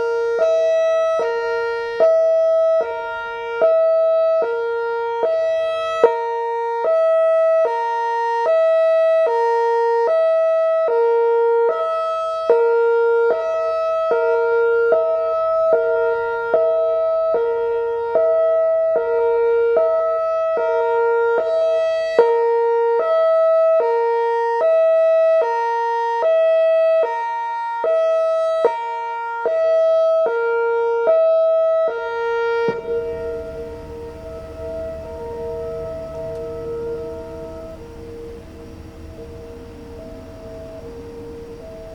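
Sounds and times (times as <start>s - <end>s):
warning siren hi-lo tone: 0.0s - 41.9s
low rumbling noise: 32.1s - 41.9s.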